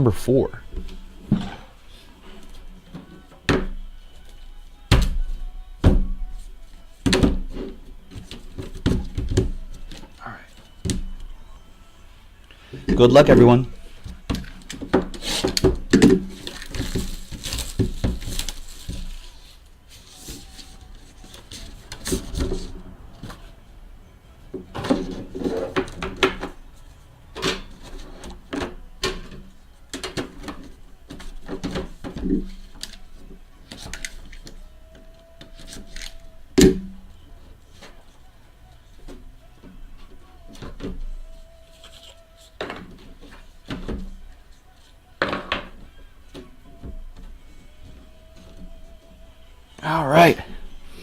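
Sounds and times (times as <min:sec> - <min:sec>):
packaging rustling and scraping: 0:13.8 - 0:23.6, 0:27.6 - 0:36.4, 0:40.1 - 0:49.0.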